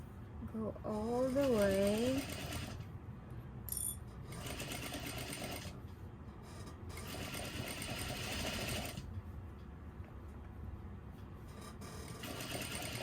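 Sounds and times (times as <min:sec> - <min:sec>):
electric sewing machine stitching: 0:01.3 - 0:02.8, 0:04.3 - 0:05.7, 0:07.0 - 0:09.0, 0:12.2 - 0:13.0.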